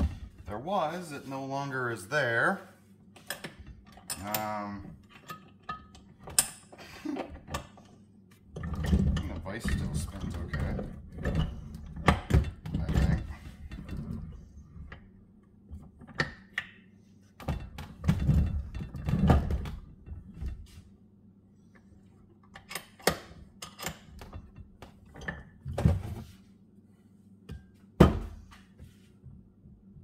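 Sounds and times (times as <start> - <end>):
metal clanks and knocks: 8.5 - 15.0, 17.4 - 20.8, 22.5 - 26.3.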